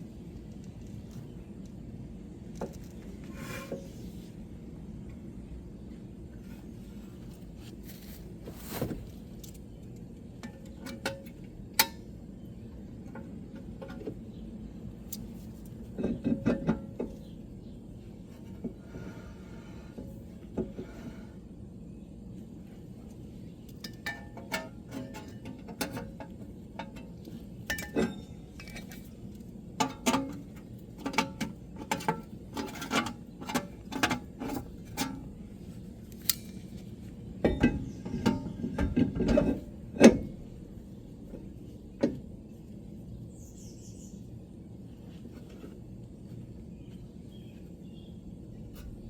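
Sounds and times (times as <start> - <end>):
metal tools clinking on car parts: 27.7 - 29.1.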